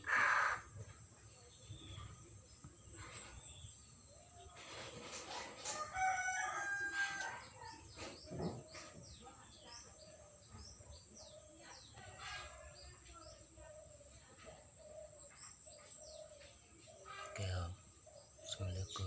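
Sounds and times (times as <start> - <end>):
small birds chirping: 0.0 - 19.0
rooster crowing: 5.7 - 7.6.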